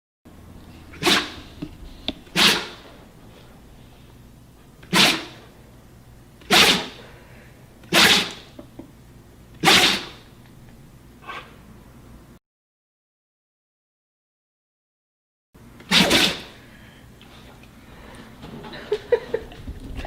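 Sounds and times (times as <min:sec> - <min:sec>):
dog sneezing: 0:00.9 - 0:01.6, 0:02.3 - 0:03.0, 0:04.8 - 0:05.5, 0:06.4 - 0:07.1, 0:07.8 - 0:08.6, 0:09.6 - 0:10.3, 0:15.9 - 0:16.6.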